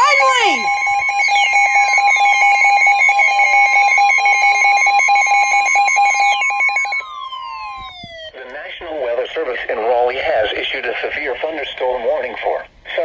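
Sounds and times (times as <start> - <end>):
harsh two-tone alarm: 0.0 - 8.4.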